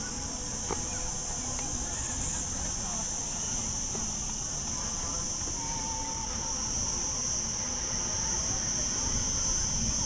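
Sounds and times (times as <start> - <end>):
high-pitched insect chorus: 1.8 - 3.5.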